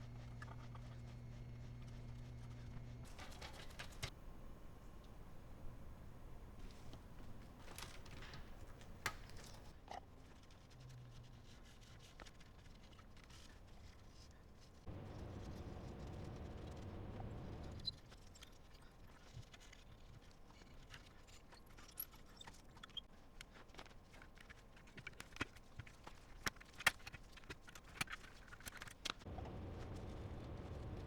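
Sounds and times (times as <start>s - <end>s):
low hum: 0.0s - 9.7s, 14.9s - 17.9s, 29.3s - 31.0s
small hard parts clicking and tapping: 20.6s - 29.2s.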